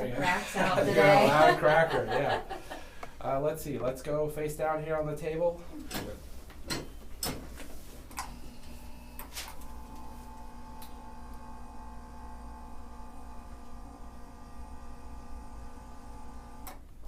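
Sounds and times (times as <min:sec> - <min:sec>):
electric motor humming: 0:08.2 - 0:16.8.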